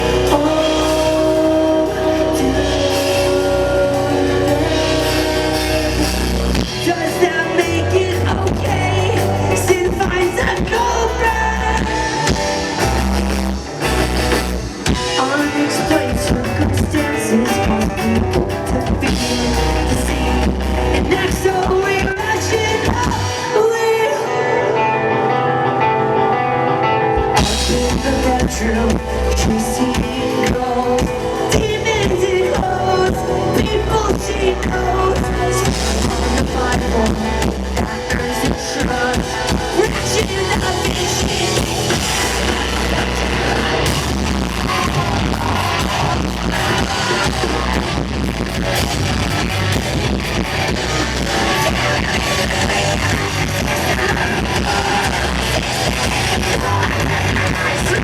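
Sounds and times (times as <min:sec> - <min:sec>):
person singing: 0:00.0 - 0:14.0, 0:14.8 - 0:58.0
live rock band playing: 0:00.0 - 0:58.0.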